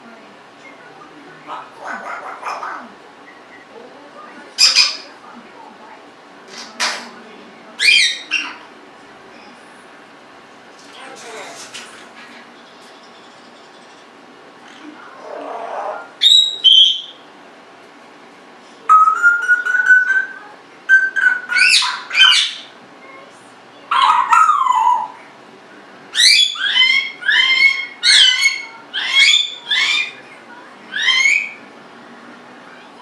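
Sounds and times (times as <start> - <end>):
parrot whistling: 7.8 - 8.6, 15.2 - 17.2, 18.9 - 22.7, 26.1 - 30.2, 30.9 - 31.6.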